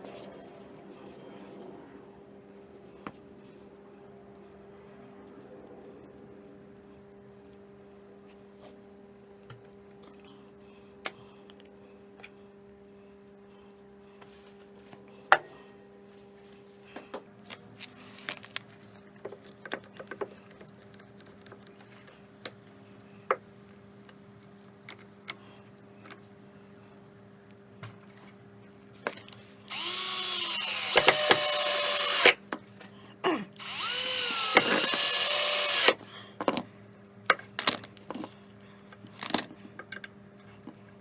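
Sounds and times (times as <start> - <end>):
plywood and screws clicking: 29.7 - 32.4, 33.6 - 36.0.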